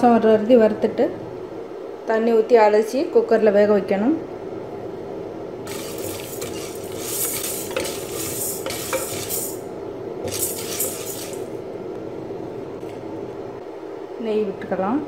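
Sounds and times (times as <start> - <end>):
spoon scraping dry lentils in pot: 5.7 - 9.6, 10.2 - 11.5.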